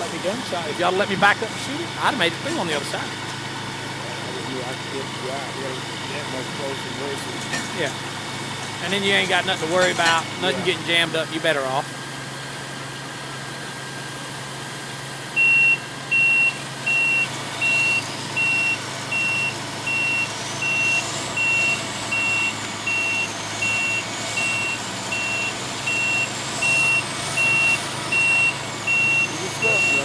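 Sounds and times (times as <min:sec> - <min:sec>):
diesel engine running: 0:00.0 - 0:30.0
truck reverse warning beeps: 0:04.2 - 0:11.6, 0:15.1 - 0:30.0.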